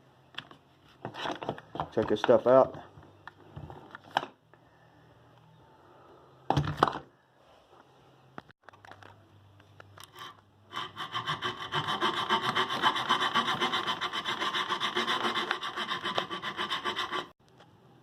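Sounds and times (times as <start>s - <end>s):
hand saw cutting: 10.7s - 17.4s.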